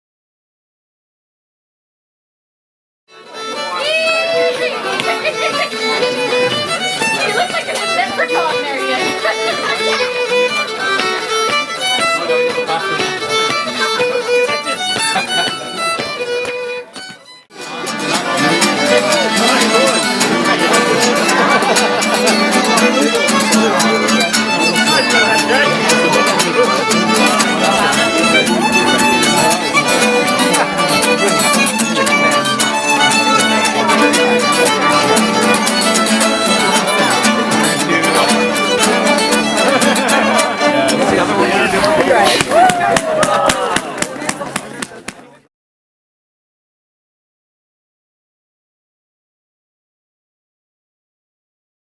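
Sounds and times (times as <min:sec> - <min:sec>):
fiddle playing lively tune: 0:03.1 - 0:45.3.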